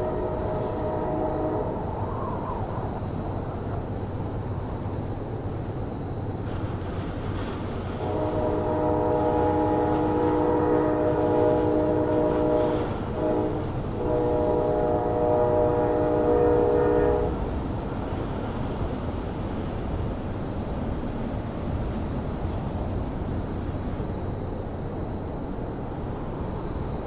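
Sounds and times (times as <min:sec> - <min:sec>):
locomotive horn blasts: 0:00.0 - 0:01.8, 0:08.0 - 0:17.4.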